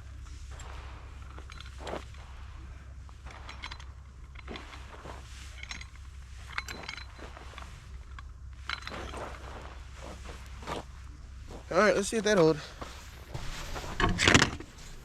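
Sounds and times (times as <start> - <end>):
low steady rumble: 0.0 - 15.0
metallic clinks of gear: 1.2 - 2.3, 3.3 - 9.6.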